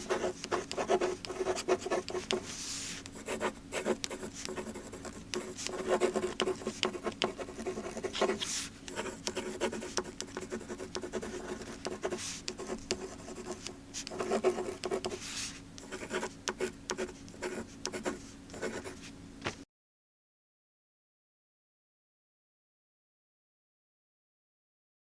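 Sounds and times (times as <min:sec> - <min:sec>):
pen writing on paper: 0:00.0 - 0:19.0.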